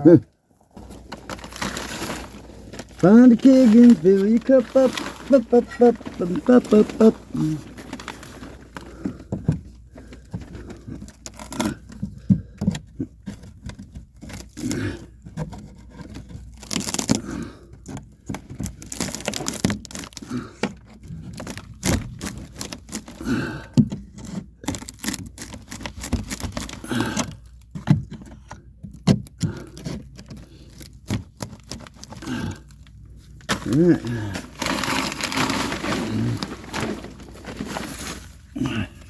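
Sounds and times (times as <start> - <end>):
pry bar scraping wood: 9.6 - 19.3, 23.8 - 32.2.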